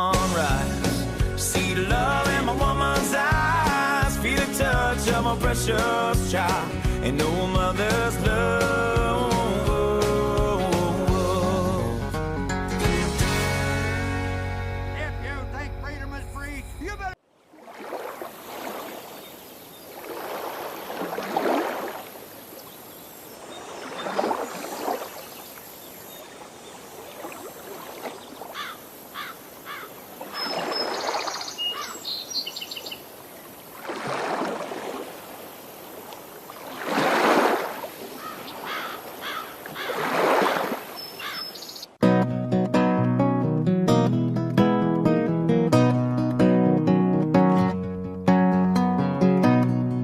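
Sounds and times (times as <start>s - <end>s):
short bird chirps: 30.4s - 33.0s, 41.0s - 42.0s.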